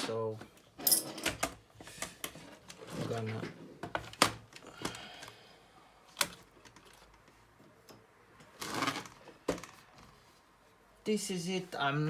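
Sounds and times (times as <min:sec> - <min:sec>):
sharp clicks and knocks of parts: 0:06.1 - 0:08.1.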